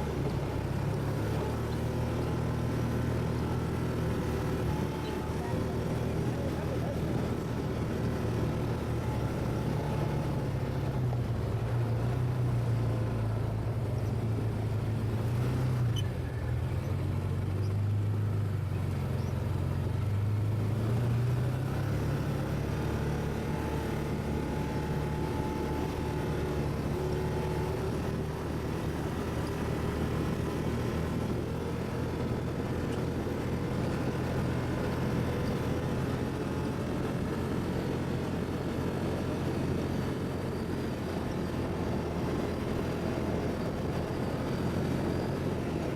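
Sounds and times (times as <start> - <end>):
atv engine running: 0.0 - 45.9.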